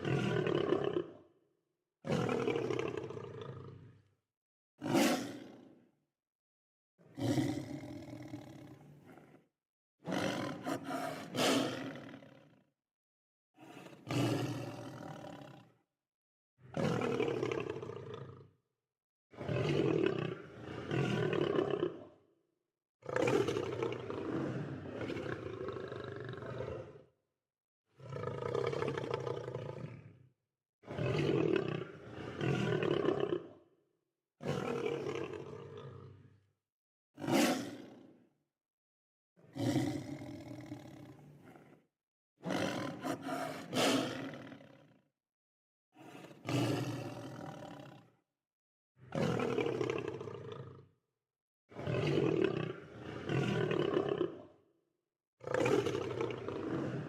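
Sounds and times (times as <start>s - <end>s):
lions roaring: 42.5s - 44.6s, 46.0s - 47.8s.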